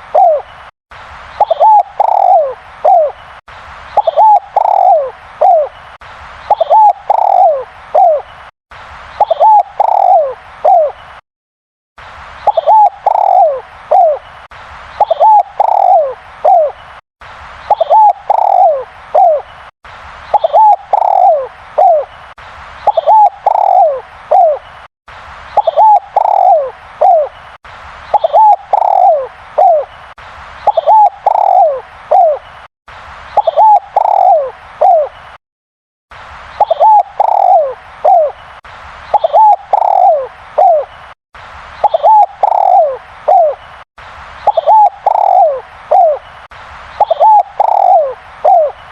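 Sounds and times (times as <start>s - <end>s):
dove cooing: 0.0s - 0.5s, 1.4s - 3.2s, 4.0s - 5.7s, 6.5s - 8.2s, 9.2s - 11.0s, 12.5s - 14.2s, 15.0s - 16.8s, 17.7s - 19.4s, 20.3s - 22.1s, 22.9s - 24.6s, 25.6s - 27.3s, 28.1s - 29.9s, 30.7s - 32.4s, 33.4s - 35.1s, 36.6s - 38.4s, 39.1s - 40.9s, 41.8s - 43.6s, 44.5s - 46.2s, 47.0s - 48.8s.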